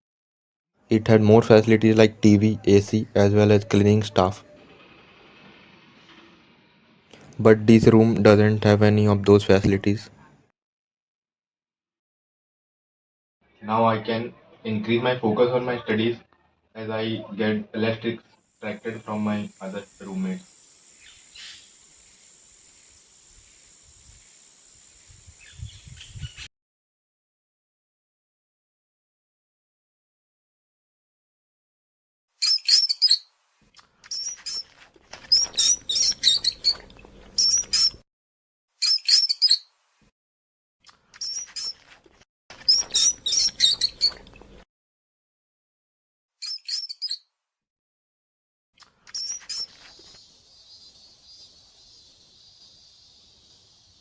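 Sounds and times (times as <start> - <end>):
small bird chirping: 18.6 - 26.5, 32.4 - 33.3, 34.0 - 38.0, 38.8 - 39.7, 41.2 - 41.8, 42.6 - 44.3, 46.4 - 47.3, 49.0 - 54.0.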